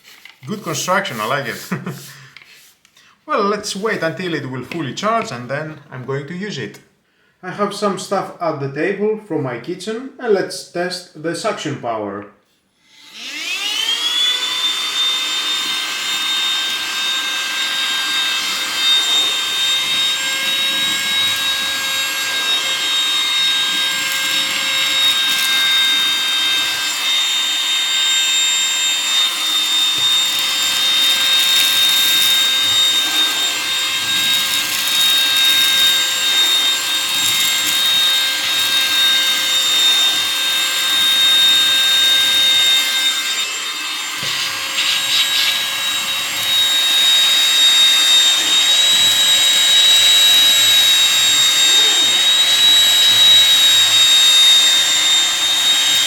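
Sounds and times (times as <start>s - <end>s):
handheld vacuum motor whine: 12.8s - 56.0s.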